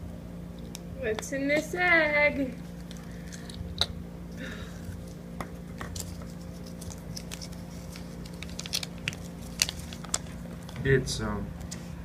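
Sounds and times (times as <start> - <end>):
foil wrapper crackling: 5.9 - 10.9.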